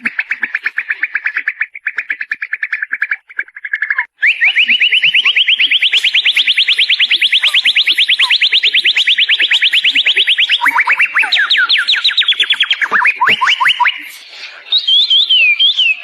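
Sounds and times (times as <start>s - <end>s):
bird singing trills: 0.0s - 16.0s.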